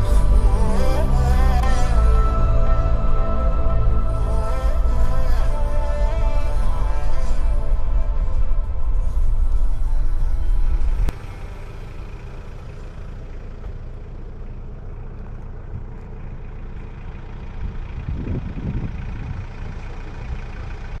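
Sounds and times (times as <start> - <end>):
music: 0.0 - 11.1
low rumble: 0.0 - 21.0.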